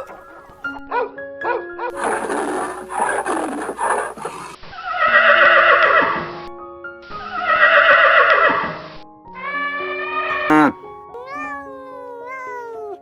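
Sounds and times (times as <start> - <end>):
background music with held notes: 0.0 - 13.0
different animal sound: 1.9 - 6.0, 10.5 - 11.6
farm animal calling: 10.5 - 11.5.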